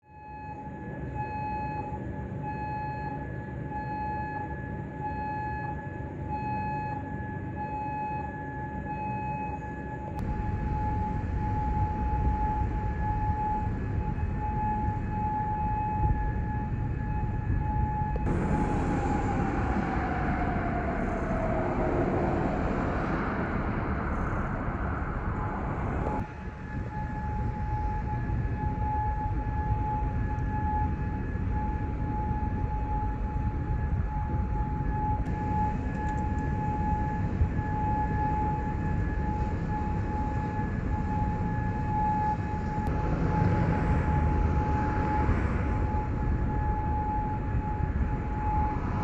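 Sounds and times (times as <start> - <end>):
pulsing warning siren: 0.0 - 49.0
low rumble: 10.2 - 49.0
click: 36.0 - 36.5.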